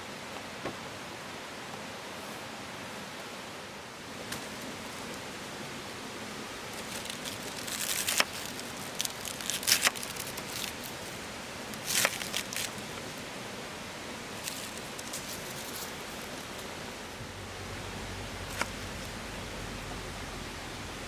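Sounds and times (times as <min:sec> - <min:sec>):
crinkling handling noise: 0:06.6 - 0:13.3, 0:14.3 - 0:16.9, 0:18.4 - 0:19.2.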